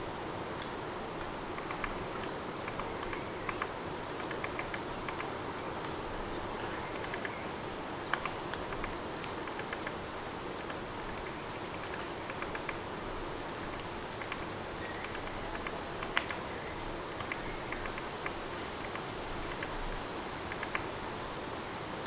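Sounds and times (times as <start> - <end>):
sharp ticks: 8.1 - 10.0, 13.7 - 16.4.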